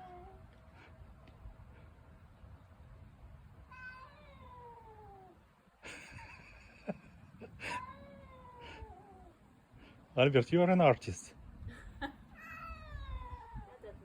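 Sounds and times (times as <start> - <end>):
cat yowling: 3.7 - 5.4, 7.6 - 9.4, 12.4 - 14.0.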